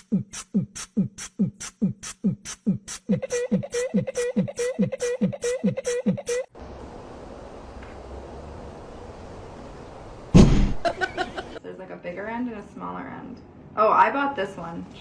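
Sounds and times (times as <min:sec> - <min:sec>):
beatbox hi-hat hiss: 0:00.0 - 0:06.5
beatbox kick drum: 0:00.0 - 0:06.5.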